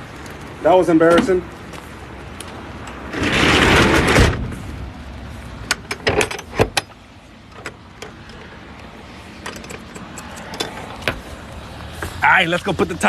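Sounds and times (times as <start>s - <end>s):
sharp clicks and knocks: 5.6s - 11.3s.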